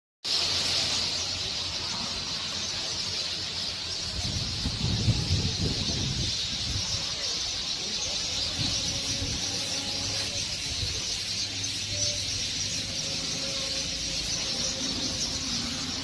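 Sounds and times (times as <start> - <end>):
birds chirping in chorus: 0.3 - 16.0.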